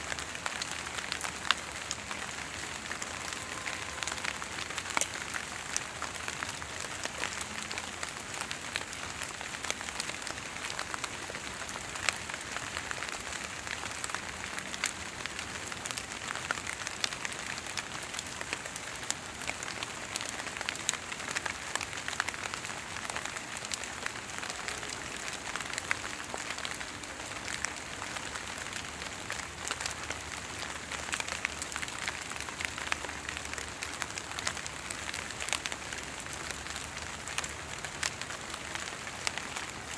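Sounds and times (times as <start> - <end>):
water dripping onto foliage: 0.1 - 39.9.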